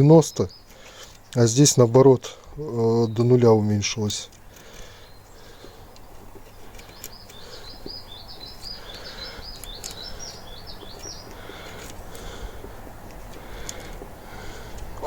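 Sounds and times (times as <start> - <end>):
songbird chirping: 0.0 - 15.0.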